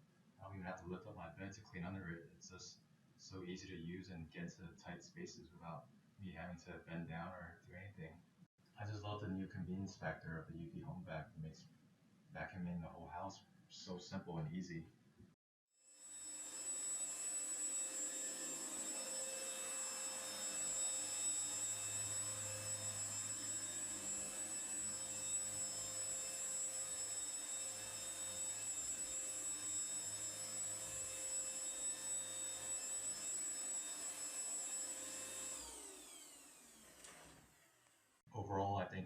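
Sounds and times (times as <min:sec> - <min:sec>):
vacuum motor winding down: 0:16.0 - 0:38.1
stick vacuum whining: 0:16.2 - 0:38.0.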